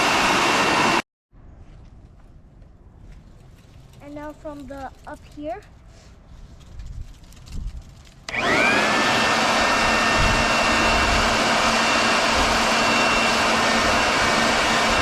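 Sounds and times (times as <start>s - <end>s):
electric leaf blower whine: 0.0s - 1.0s, 8.3s - 15.0s.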